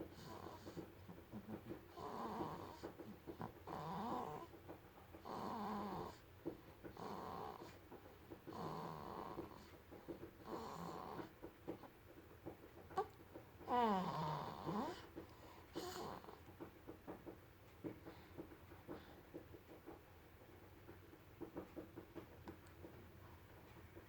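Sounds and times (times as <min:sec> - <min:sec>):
baby snoring: 0:00.1 - 0:04.6, 0:05.2 - 0:06.3, 0:06.9 - 0:07.8, 0:08.5 - 0:11.4, 0:13.0 - 0:16.4.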